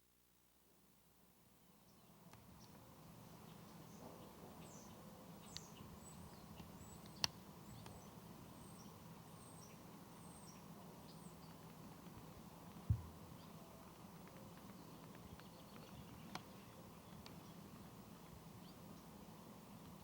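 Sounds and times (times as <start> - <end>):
faint bird chirps: 3.4 - 11.6
low hum: 12.9 - 13.4.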